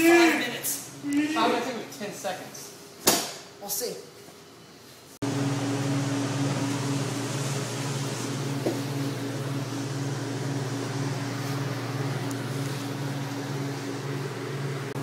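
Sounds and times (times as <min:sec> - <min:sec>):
low mechanical hum with pulsing throb: 0:04.8 - 0:15.0.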